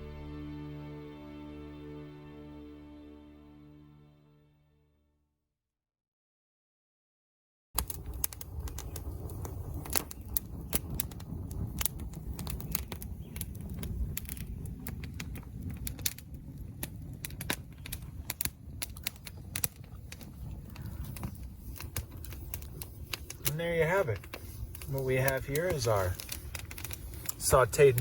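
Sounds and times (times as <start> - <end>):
campfire crackling and popping: 7.8 - 28.0
low rumble: 7.9 - 28.0.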